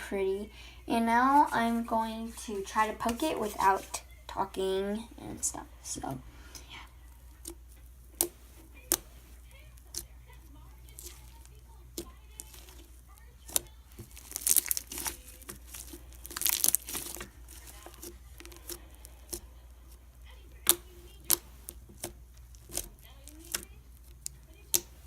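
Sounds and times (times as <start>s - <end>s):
slime squished by hand: 7.1s - 25.0s.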